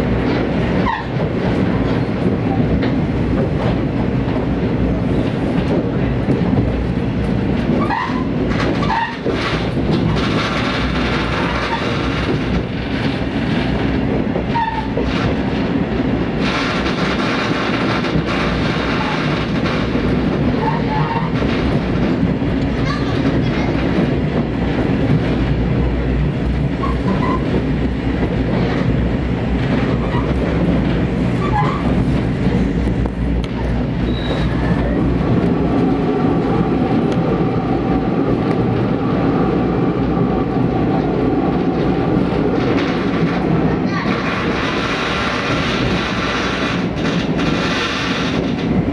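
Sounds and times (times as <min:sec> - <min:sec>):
diesel train engine drone: 0:00.0 - 0:48.9
wheel and rail noise: 0:00.0 - 0:48.9
high squeaks: 0:34.0 - 0:34.6.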